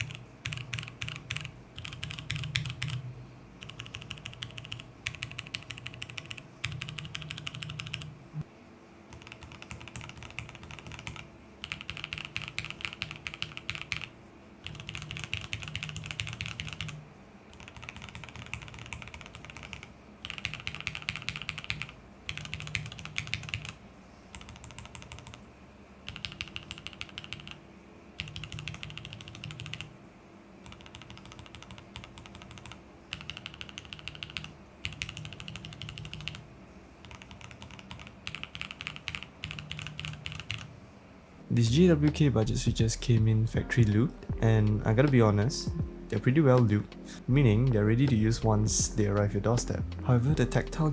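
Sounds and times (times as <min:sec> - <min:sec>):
typing on mechanical keyboard: 0:00.0 - 0:03.0, 0:03.6 - 0:08.1, 0:09.1 - 0:27.6, 0:28.2 - 0:29.9, 0:30.6 - 0:36.4, 0:37.0 - 0:40.7.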